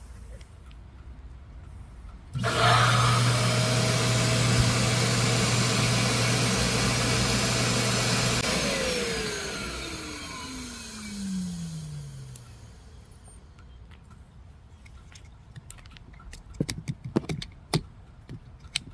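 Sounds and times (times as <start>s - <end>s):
vacuum pump running: 2.4s - 12.8s
motor spinning down whine: 2.4s - 13.0s.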